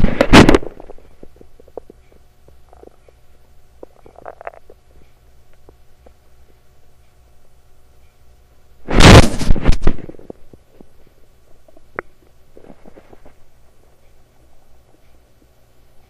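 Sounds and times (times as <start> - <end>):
stomach gurgling: 0.0 - 3.2, 3.8 - 6.6.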